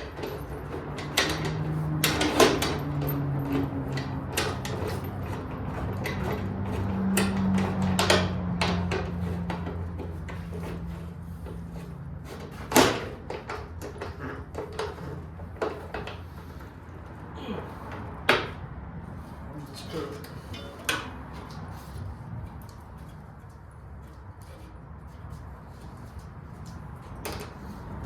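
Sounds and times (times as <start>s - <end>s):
metal tool clicks and knocks: 0.0s - 10.4s.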